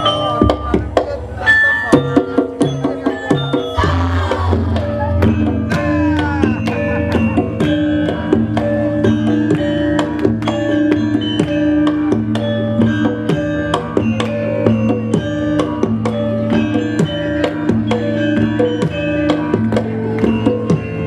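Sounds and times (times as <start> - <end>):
drum strokes: 0.0 - 21.0
gamelan ensemble playing: 0.0 - 21.0
deep gong stroke: 3.8 - 8.5.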